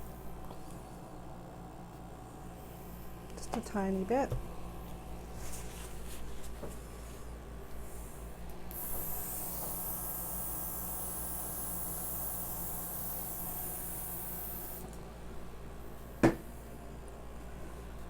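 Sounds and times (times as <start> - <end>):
airbrush blowing air: 8.7 - 14.8.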